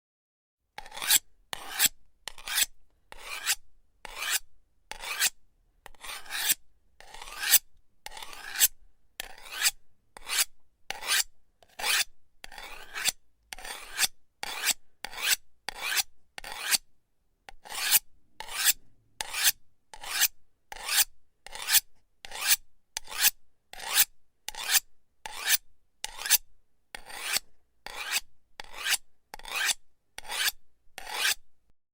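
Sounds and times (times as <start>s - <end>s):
knife blade scraping: 0.8s - 16.8s, 17.5s - 26.4s, 27.0s - 31.4s.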